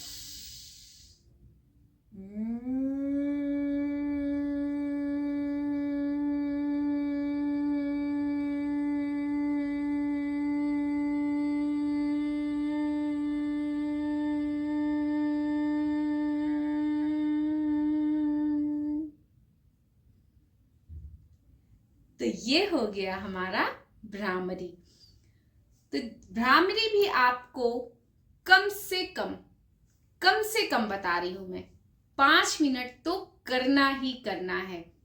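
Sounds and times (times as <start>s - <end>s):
woman humming one note: 2.2s - 19.1s.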